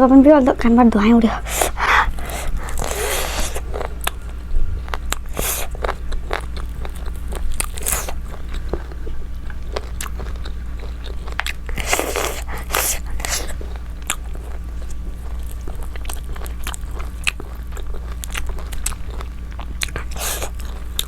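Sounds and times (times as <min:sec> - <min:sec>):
wet chewing and biting: 0:00.9 - 0:21.0
airy slurps: 0:01.0 - 0:21.0.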